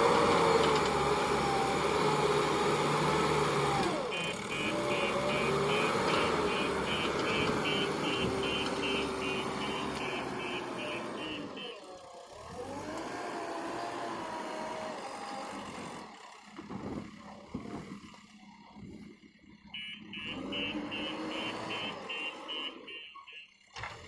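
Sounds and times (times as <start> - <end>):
diesel engine running: 0.0 - 24.0
reversing alarm beeping: 4.1 - 11.8, 19.8 - 23.6.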